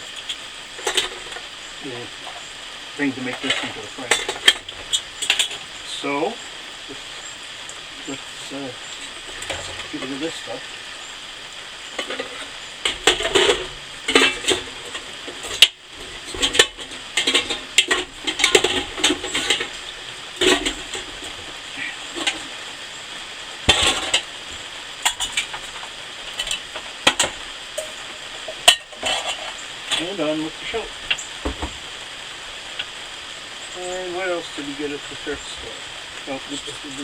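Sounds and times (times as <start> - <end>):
cookware clinking and clattering: 12.0 - 15.7, 16.3 - 19.7, 26.4 - 30.0.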